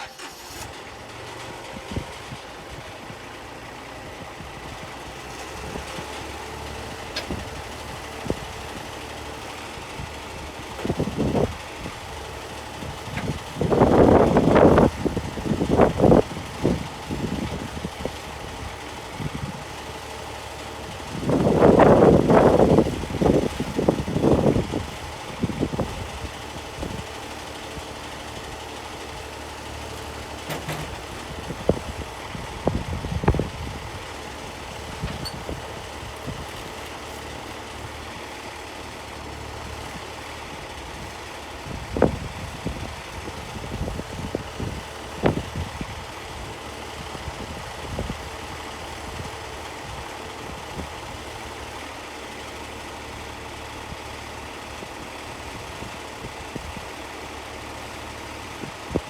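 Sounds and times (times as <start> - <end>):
engine idling: 0.0 - 59.0
knocks and clunks: 30.2 - 31.4.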